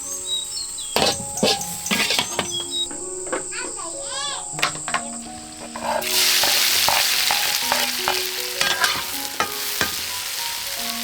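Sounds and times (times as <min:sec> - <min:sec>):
food sizzling in hot oil: 0:00.0 - 0:11.0
spatula scraping a pan: 0:01.0 - 0:03.5, 0:04.6 - 0:10.5.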